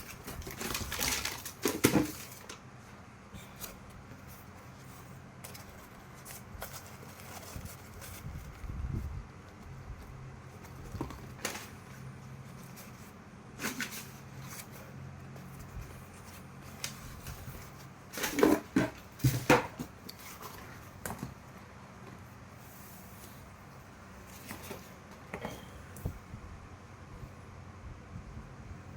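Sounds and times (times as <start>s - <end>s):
packaging knocks and rustles: 0.0s - 2.6s, 9.6s - 21.6s
low steady hum: 0.0s - 28.9s.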